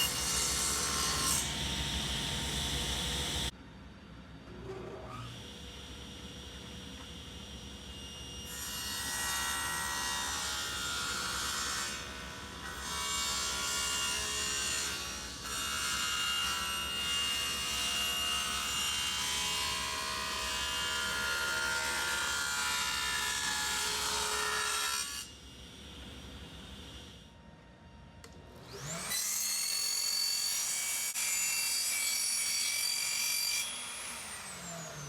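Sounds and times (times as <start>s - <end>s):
power tool whining through wood: 28.6s - 31.4s, 33.6s - 35.0s.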